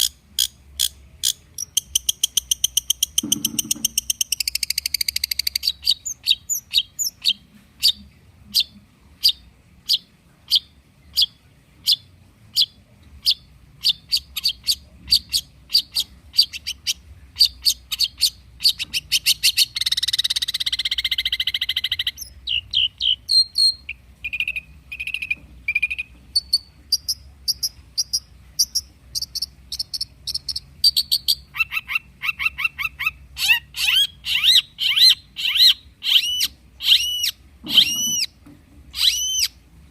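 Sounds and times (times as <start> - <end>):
bird harsh chattering: 13.3 - 38.3, 39.0 - 39.5.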